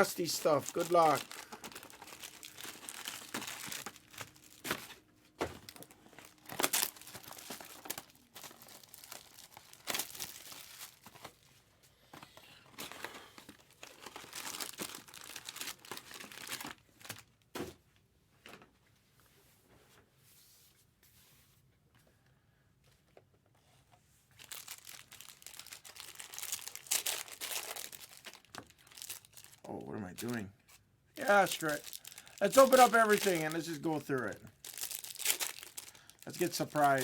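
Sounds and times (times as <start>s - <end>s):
wrappers crinkling and ripping: 0.0s - 11.5s, 12.7s - 17.4s, 24.4s - 37.0s.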